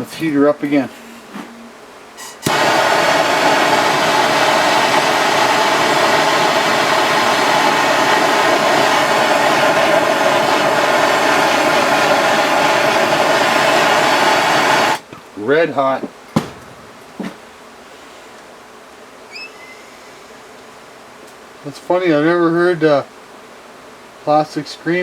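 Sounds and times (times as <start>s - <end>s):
torch flame hissing: 2.2s - 15.0s.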